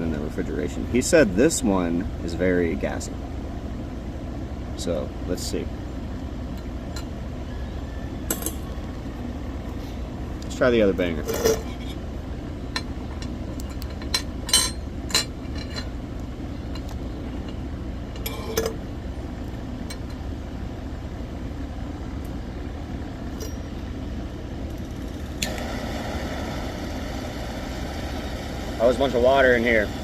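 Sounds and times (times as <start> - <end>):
torch hissing: 25.1 - 30.0.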